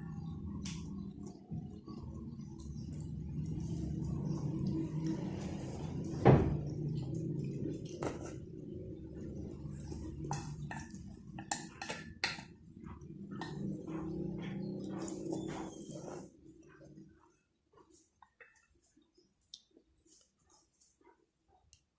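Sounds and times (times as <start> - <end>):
steady low hum: 0.0 - 17.6
chewing mouth clicks and smacks: 18.2 - 20.6.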